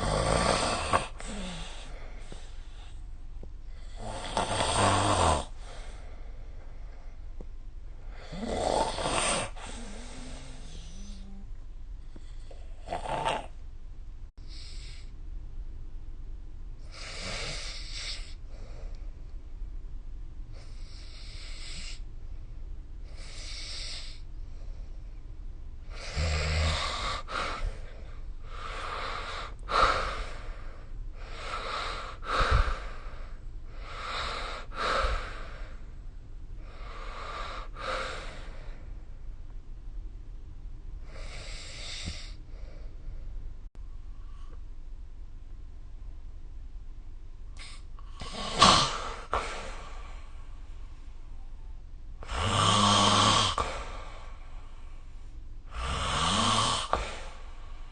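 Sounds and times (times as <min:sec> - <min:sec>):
person snoring: 0:00.0 - 0:02.8, 0:03.8 - 0:06.0, 0:08.1 - 0:11.5, 0:12.2 - 0:13.6, 0:25.9 - 0:35.8, 0:47.6 - 0:50.3, 0:52.2 - 0:54.5, 0:55.7 - 0:57.7.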